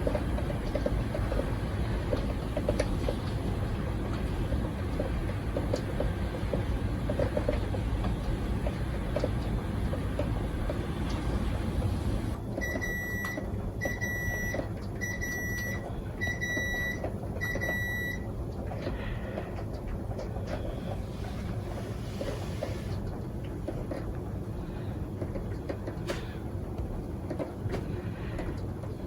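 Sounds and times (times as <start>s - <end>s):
water drips ticking: 0.0s - 11.4s.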